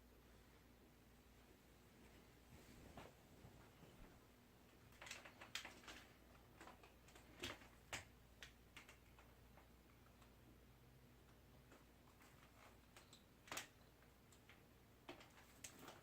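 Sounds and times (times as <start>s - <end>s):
faint sharp clicks and taps: 2.1s - 10.4s.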